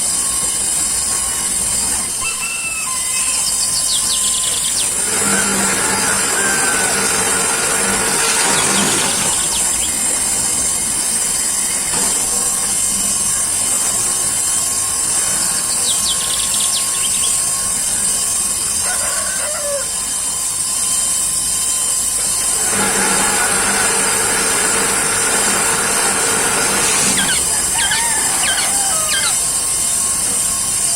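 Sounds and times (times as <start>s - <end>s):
steady hiss: 0.0s - 30.9s
chickens clucking: 2.1s - 10.0s, 22.7s - 29.6s.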